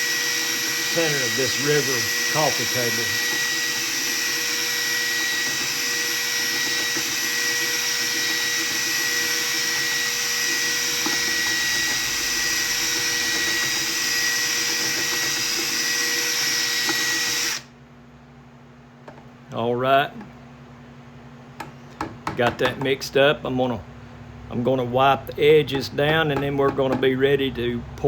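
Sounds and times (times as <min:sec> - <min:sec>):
electric mixer running: 0:00.0 - 0:17.7.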